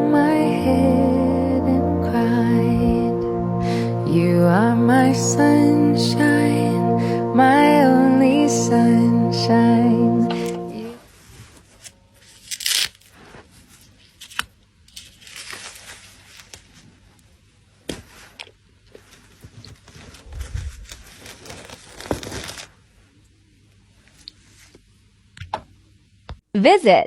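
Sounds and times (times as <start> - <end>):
rustling and crinkling handling noise: 11.0 - 23.2.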